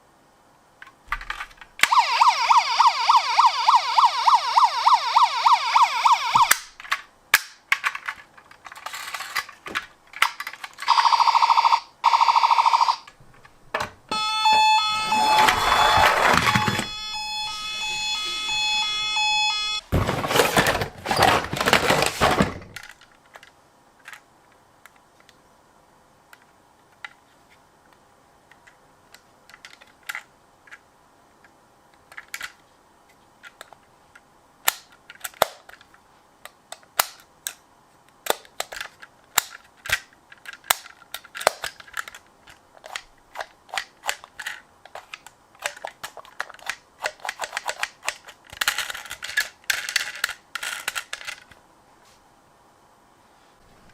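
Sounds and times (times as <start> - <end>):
electronic siren-like tone: 1.9 - 6.6, 14.1 - 19.8
toy cars clicking and clacking: 6.4 - 11.3, 38.2 - 51.6
loud noise: 14.1 - 20.3.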